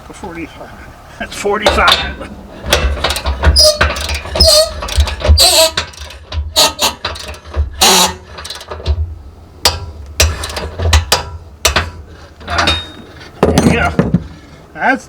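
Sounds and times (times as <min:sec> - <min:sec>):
torque wrench ratcheting: 0:02.7 - 0:09.0.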